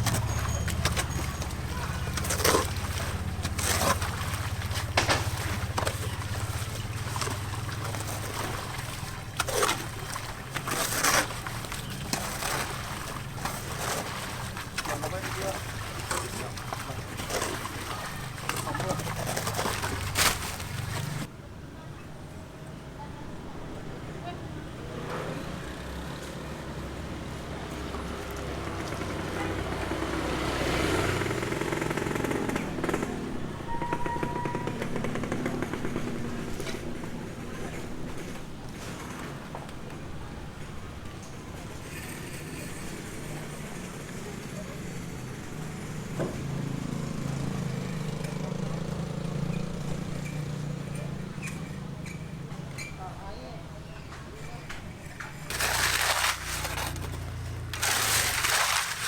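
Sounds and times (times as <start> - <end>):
engine puttering: 0.0 - 21.3, 28.4 - 38.6, 55.0 - 59.0
vehicle engine humming: 0.0 - 21.3, 54.9 - 59.0.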